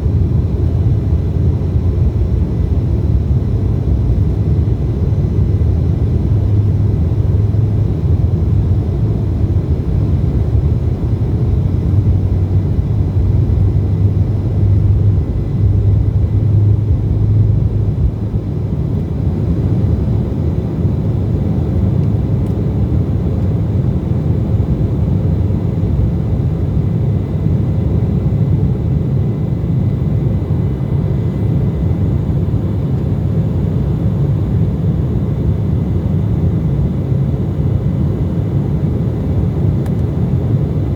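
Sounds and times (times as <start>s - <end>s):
jet engine and airflow rumble: 0.0s - 40.9s.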